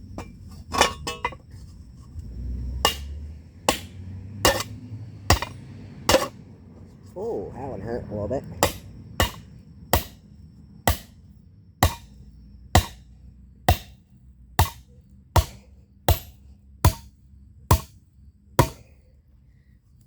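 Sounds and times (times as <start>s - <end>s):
hammer blows on hot steel: 2.8s - 6.4s, 8.6s - 10.2s, 10.9s - 11.2s, 11.8s - 12.2s.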